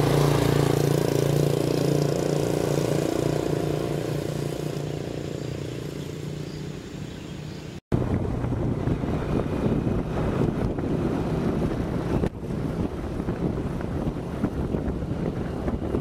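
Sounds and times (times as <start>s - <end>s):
engine drone: 0.0s - 16.0s
wind buffeting microphone: 7.9s - 16.0s.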